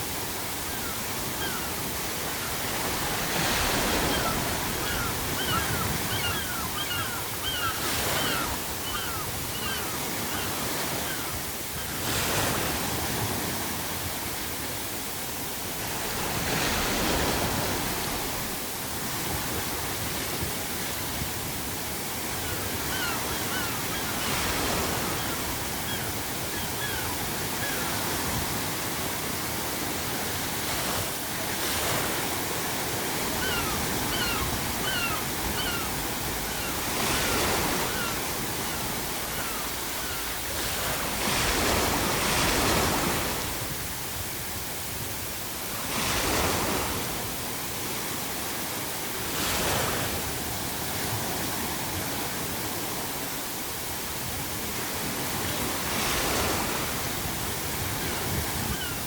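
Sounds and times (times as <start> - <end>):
sea waves breaking on shore: 0.0 - 59.0
gulls calling: 0.4 - 12.4, 22.0 - 28.5, 31.8 - 43.2, 57.8 - 59.0.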